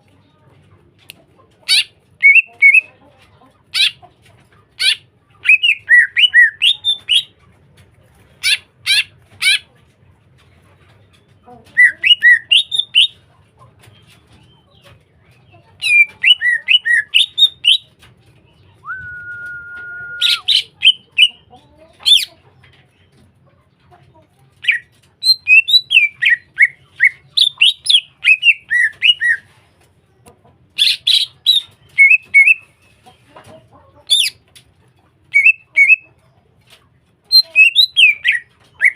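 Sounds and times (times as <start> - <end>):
bird singing chattering whistles: 1.7 - 2.8, 15.8 - 17.8, 18.8 - 21.3, 24.7 - 29.4, 30.8 - 32.8, 35.4 - 36.0, 37.3 - 38.9
long even bird whistle: 18.8 - 20.5.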